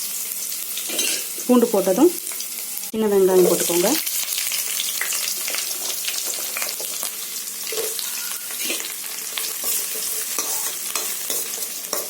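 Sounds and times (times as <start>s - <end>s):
food sizzling in oil: 0.0s - 12.0s
spatula scraping pan: 7.6s - 12.0s.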